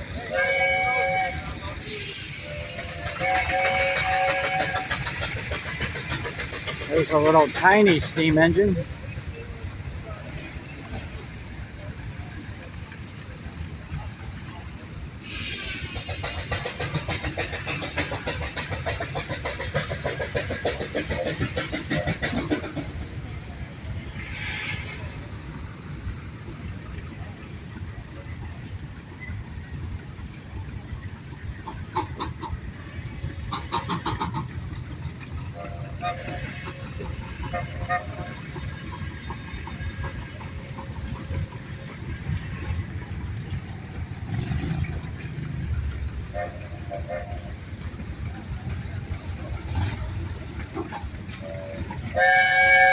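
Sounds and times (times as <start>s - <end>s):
steam engine exhaust chuffing: 0.0s - 9.9s, 11.4s - 52.9s
steam hissing: 1.4s - 9.7s, 14.4s - 28.5s.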